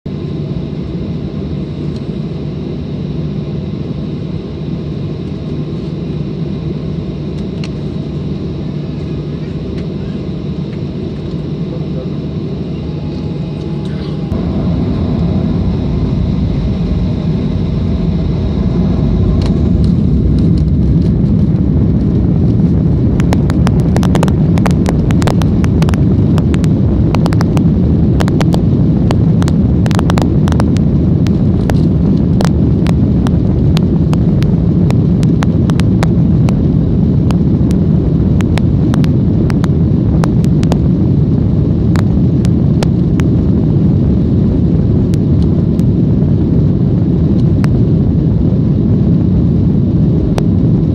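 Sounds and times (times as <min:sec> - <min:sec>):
jet engines rumbling: 0:00.1 - 0:50.9
sharp clicks and rattles: 0:19.2 - 0:36.6.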